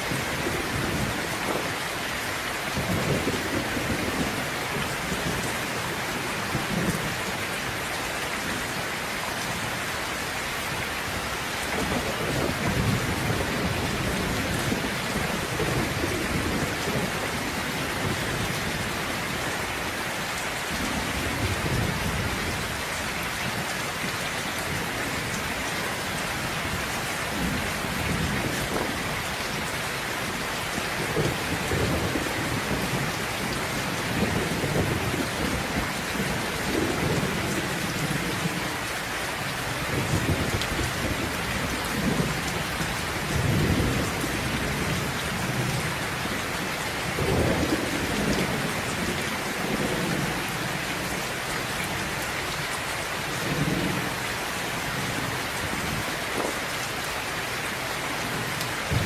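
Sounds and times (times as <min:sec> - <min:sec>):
steady rain: 0:00.0 - 0:59.0
low thunder rumbling: 0:26.4 - 0:38.6, 0:39.7 - 0:51.2.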